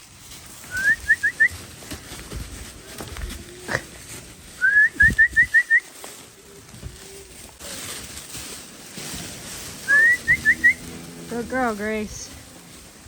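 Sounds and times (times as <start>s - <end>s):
person whistling rising notes: 4.6s - 5.8s, 9.9s - 10.8s.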